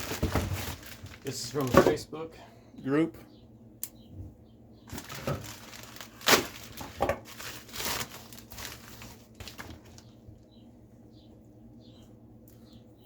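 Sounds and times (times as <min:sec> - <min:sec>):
packaging tearing: 0:00.0 - 0:01.8, 0:04.9 - 0:10.0
packaging crinkling and rustling: 0:00.0 - 0:02.0, 0:04.9 - 0:10.2.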